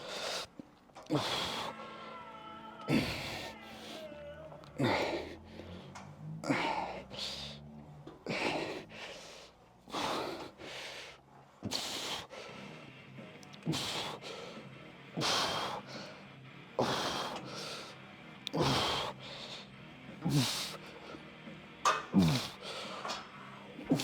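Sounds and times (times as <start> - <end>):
person breathing hard: 0.0 - 2.2, 4.8 - 13.0, 13.6 - 21.3, 22.2 - 24.0
person groaning: 2.9 - 3.6.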